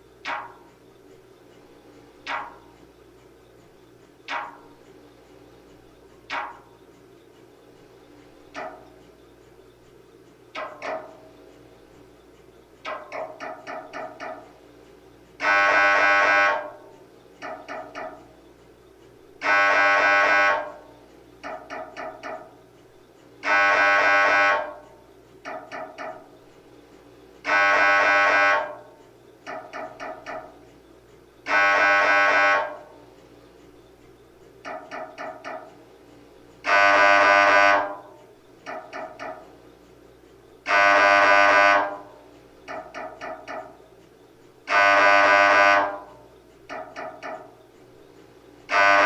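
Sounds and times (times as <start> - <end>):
mri scanner buzzing tone: 0.0 - 49.0
mri scanner quick knocks: 0.3 - 0.7, 2.3 - 2.7, 4.3 - 4.8, 6.3 - 6.8, 8.6 - 9.0, 10.6 - 11.3, 12.9 - 14.6, 15.5 - 18.3, 19.4 - 22.6, 25.5 - 26.3, 29.5 - 30.6, 34.7 - 35.7.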